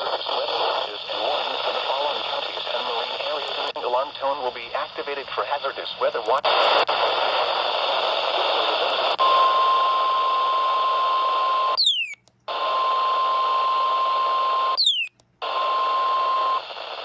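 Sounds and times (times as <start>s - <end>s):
radio receiver hiss: 0.0s - 10.0s, 12.5s - 17.0s
steady high alarm tone: 9.2s - 16.6s
quick falling chirp: 11.8s - 12.2s, 14.8s - 15.1s.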